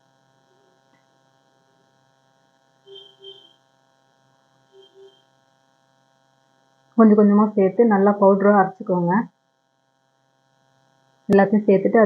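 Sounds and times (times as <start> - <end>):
faint electrical hum: 0.0 - 12.0
short chirps: 2.9 - 3.6, 4.8 - 5.2.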